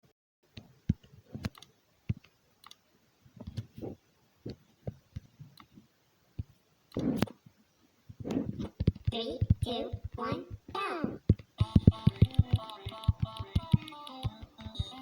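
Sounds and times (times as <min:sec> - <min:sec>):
tapping on hard objects: 0:08.8 - 0:15.0.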